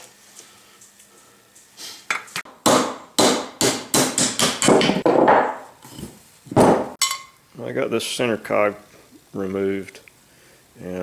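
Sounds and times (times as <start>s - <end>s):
hammer striking metal: 2.5s - 5.6s, 6.8s - 7.3s.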